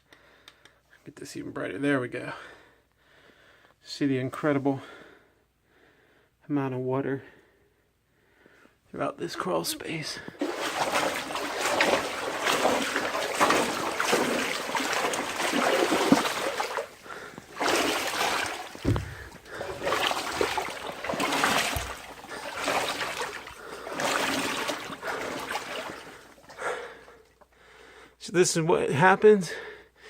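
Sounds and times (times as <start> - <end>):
water sloshing and splashing: 10.0 - 27.4
low thuds: 10.7 - 23.5.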